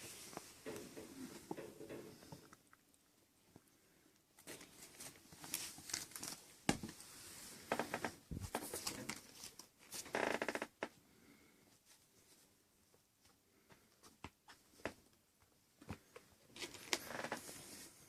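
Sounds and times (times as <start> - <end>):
kittens scuffling and rustling: 4.3 - 10.1, 11.7 - 18.0.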